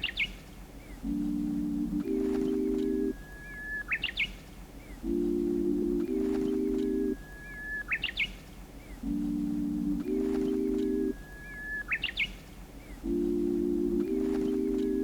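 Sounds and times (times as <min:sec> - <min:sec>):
sustained low chords: 0:01.0 - 0:03.1, 0:05.0 - 0:07.2, 0:09.0 - 0:11.1, 0:13.0 - 0:15.0
recorded bird whistle call: 0:03.3 - 0:04.3, 0:07.3 - 0:08.3, 0:11.2 - 0:12.4.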